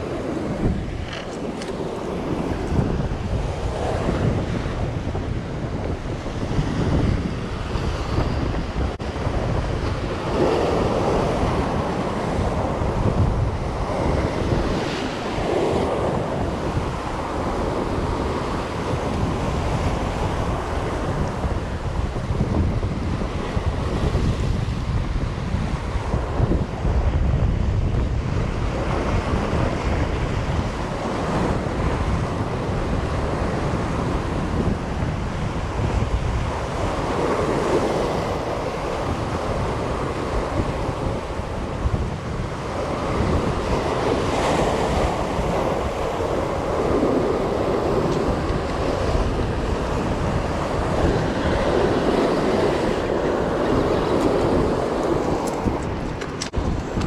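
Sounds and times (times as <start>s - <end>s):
sea waves surging against rocks: 0.0s - 57.0s
wind buffeting microphone: 0.0s - 57.0s.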